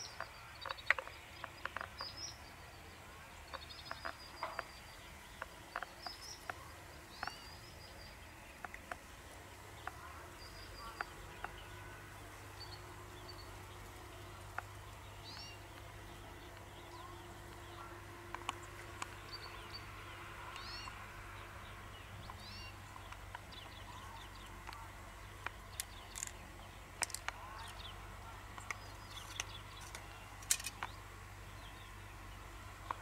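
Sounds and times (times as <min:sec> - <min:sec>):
faint low hum: 0:00.0 - 0:33.0
small birds chirping: 0:00.0 - 0:33.0
sharp clicks: 0:08.5 - 0:09.1, 0:24.4 - 0:27.9, 0:28.5 - 0:31.0.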